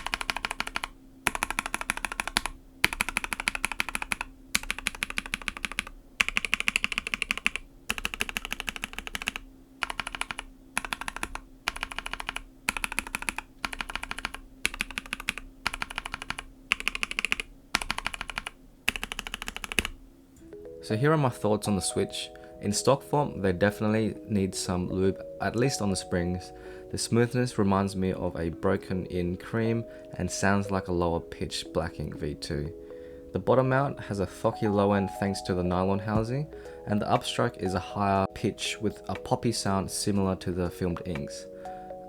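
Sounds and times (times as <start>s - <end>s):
typing on mechanical keyboard: 0.0s - 20.0s.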